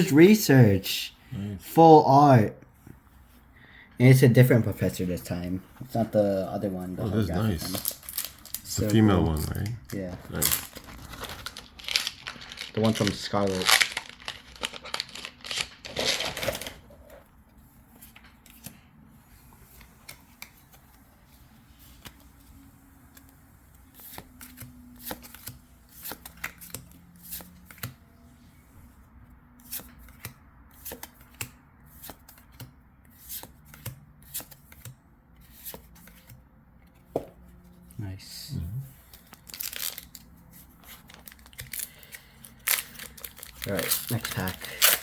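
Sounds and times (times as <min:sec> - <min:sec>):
card rustle: 0:07.0 - 0:17.2, 0:39.0 - 0:45.0.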